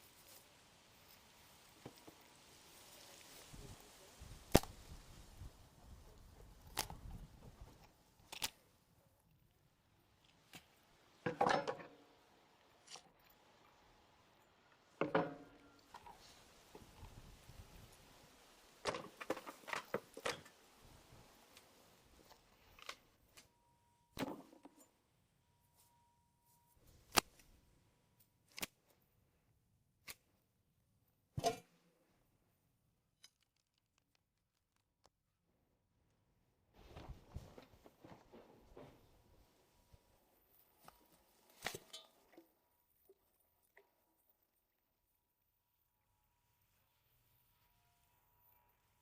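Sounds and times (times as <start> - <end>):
soft handling and rustling: 0.0 - 9.5, 36.7 - 42.5
faint steady high tone: 23.2 - 27.0.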